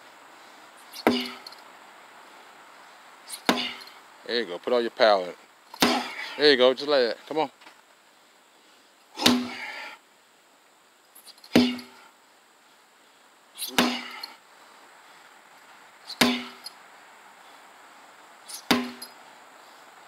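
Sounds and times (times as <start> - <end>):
sledgehammer strikes: 0.9 - 1.5, 3.3 - 4.0, 5.7 - 6.4, 9.2 - 9.7, 11.5 - 12.0, 13.6 - 14.3, 16.1 - 16.7, 18.5 - 19.2.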